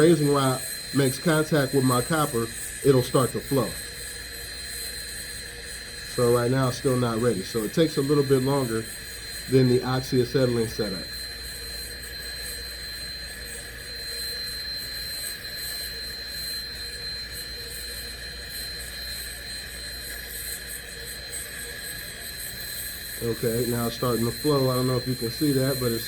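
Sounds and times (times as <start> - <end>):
torch flame hissing: 0.0 - 26.0.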